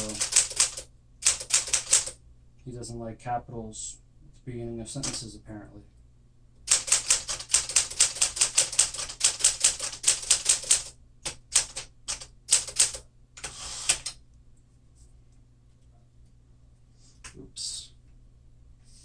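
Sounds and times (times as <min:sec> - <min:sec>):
manual typewriter key strikes: 0:00.0 - 0:02.2, 0:06.7 - 0:13.0
typewriter rattle: 0:00.0 - 0:02.2, 0:05.0 - 0:05.2, 0:06.7 - 0:14.1.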